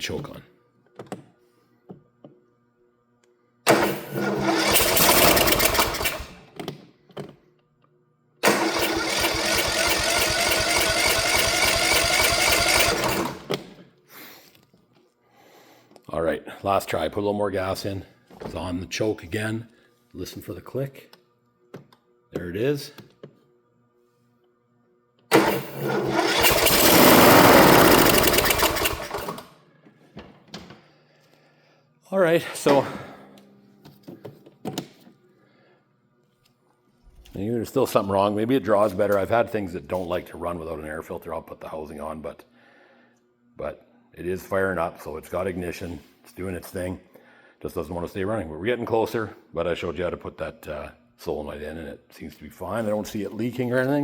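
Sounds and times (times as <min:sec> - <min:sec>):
mower engine cranking: 0:03.7 - 0:06.5, 0:08.4 - 0:13.8, 0:25.3 - 0:29.5.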